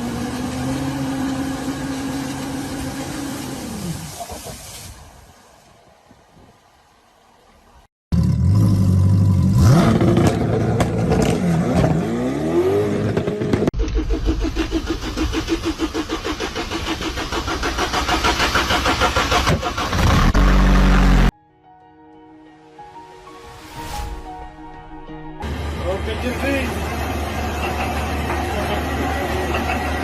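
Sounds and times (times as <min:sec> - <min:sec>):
engine running with fast pulsing: 0:13.8 - 0:21.3
engine revving loudly: 0:14.3 - 0:21.3.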